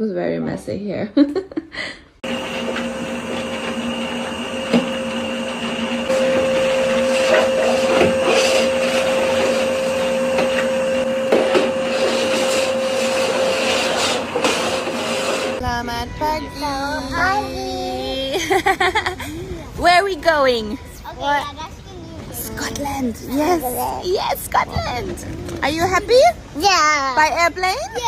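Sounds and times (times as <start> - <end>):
electric motor humming and whining: 2.2 - 15.6.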